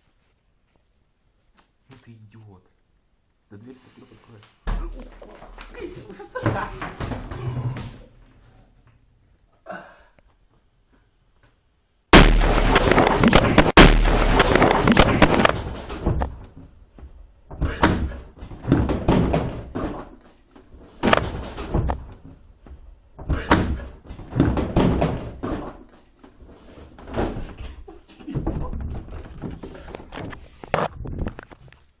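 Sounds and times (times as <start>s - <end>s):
short loud bursts: 12.1s - 15.5s
firecracker bang: 12.1s - 16.0s.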